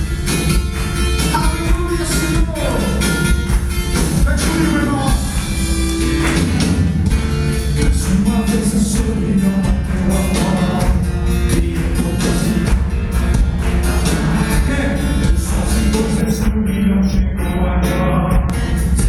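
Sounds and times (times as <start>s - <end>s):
loud band music with guitar: 0.0s - 19.0s
person singing: 7.8s - 12.8s, 14.0s - 19.0s.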